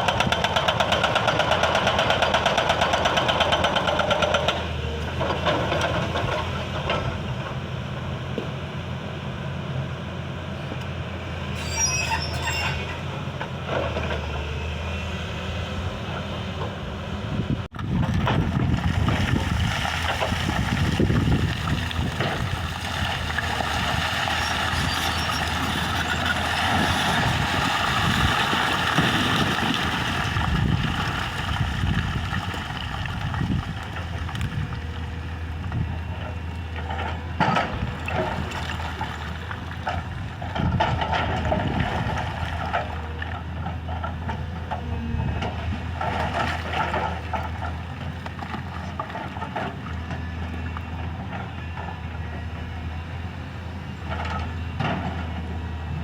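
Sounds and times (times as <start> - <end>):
diesel engine running: 12.9 - 56.0.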